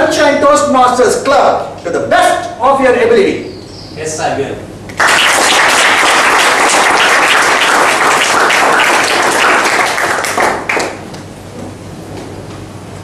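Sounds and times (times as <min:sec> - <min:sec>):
audience applauding: 0:04.9 - 0:11.1.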